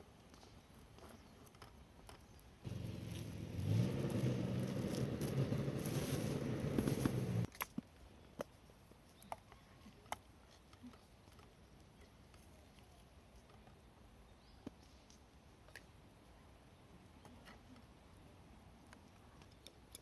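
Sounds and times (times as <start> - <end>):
low rumble with hum: 2.7 - 7.5.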